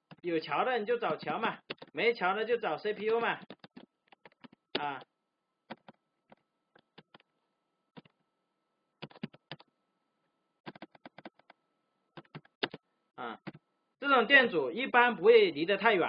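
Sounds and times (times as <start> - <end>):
keyboard typing: 1.6 - 2.0, 3.4 - 5.1, 5.7 - 7.3, 7.9 - 8.2, 9.0 - 9.7, 10.6 - 12.8, 13.4 - 13.6.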